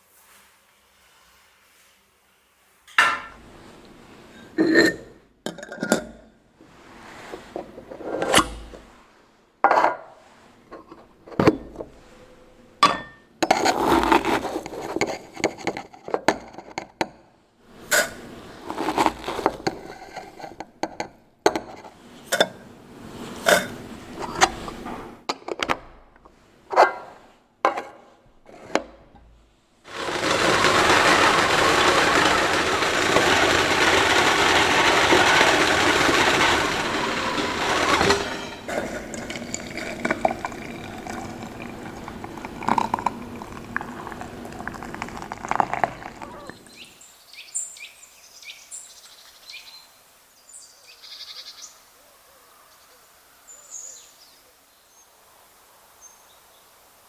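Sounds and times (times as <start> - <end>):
crockery and glass clinking: 12.8 - 13.3, 36.1 - 46.6
water running: 17.7 - 21.0, 29.9 - 46.9.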